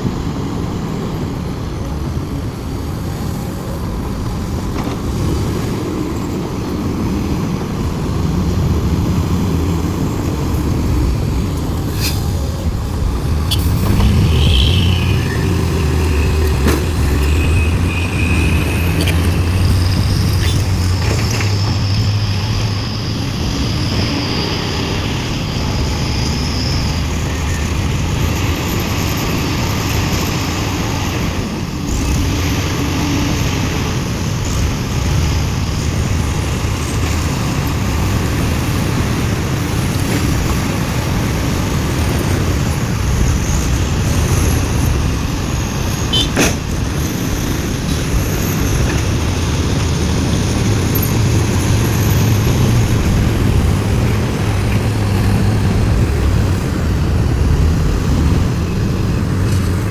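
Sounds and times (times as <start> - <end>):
excavator diesel engine rumble: 0.0 - 59.9.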